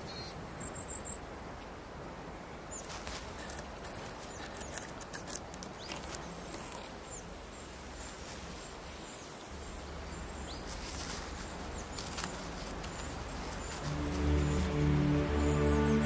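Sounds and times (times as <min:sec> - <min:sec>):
soft steady hiss: 0:00.0 - 0:16.0
light clicks and rustles: 0:02.8 - 0:07.2, 0:10.6 - 0:13.9.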